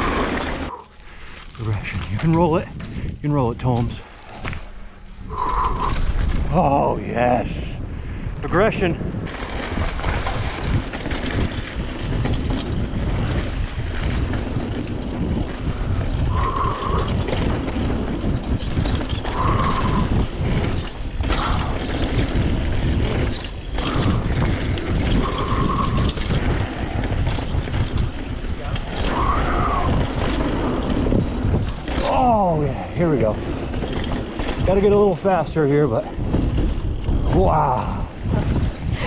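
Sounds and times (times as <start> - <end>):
mountain bike rattling on dirt trail: 0.0 - 39.0
wind buffeting microphone: 0.0 - 39.0.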